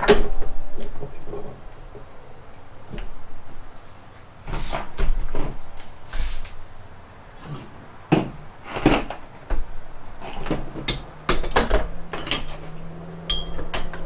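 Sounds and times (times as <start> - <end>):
ringing metallic clinks: 12.1 - 14.0
steel gears clanking together: 12.2 - 14.0.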